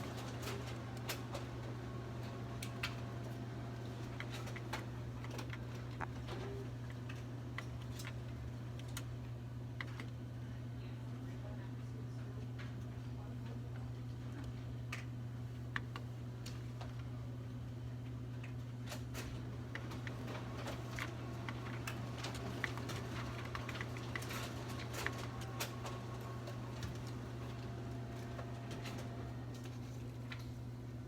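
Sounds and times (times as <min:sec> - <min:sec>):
laser printer humming: 0:19.6 - 0:31.0
printer clicks and ticks: 0:19.7 - 0:29.6.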